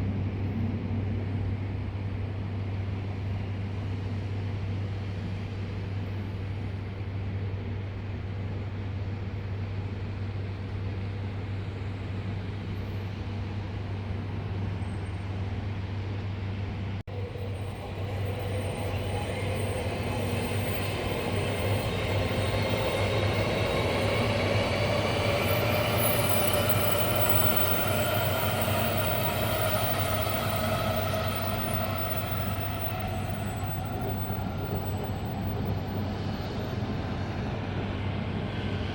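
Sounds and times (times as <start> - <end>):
train low hum: 0.0 - 38.9
electric motor whine rising: 20.4 - 35.9.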